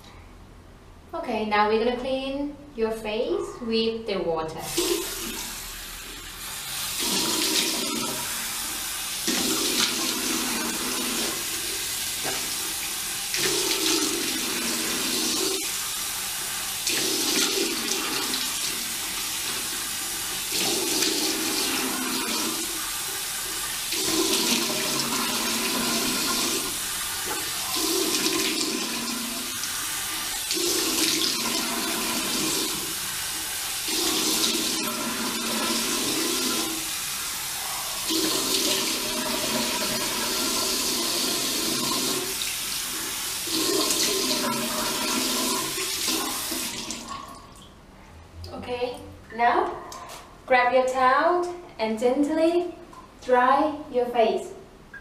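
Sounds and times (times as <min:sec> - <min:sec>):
tap running into sink: 0:11.1 - 0:11.4, 0:12.2 - 0:12.6.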